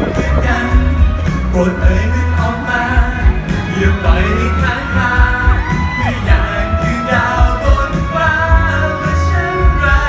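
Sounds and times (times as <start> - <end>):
heavy pulsing bass beat: 0.0 - 10.0
loud pop song: 0.0 - 10.0.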